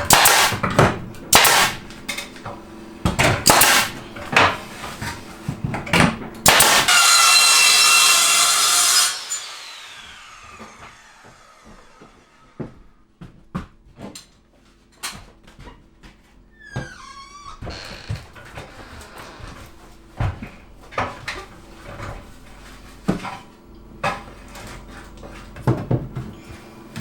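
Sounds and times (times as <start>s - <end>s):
power saw whining: 6.4s - 12.7s, 17.7s - 19.8s
hand sawing wood: 6.5s - 12.7s.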